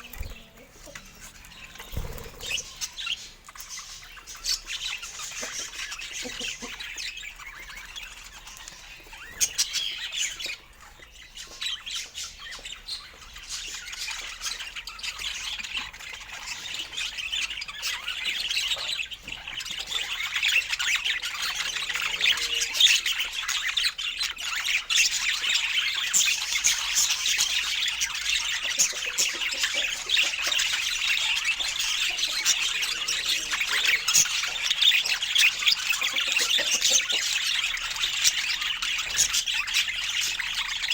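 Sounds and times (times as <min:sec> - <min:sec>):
budgies chattering: 0:00.0 - 0:40.9.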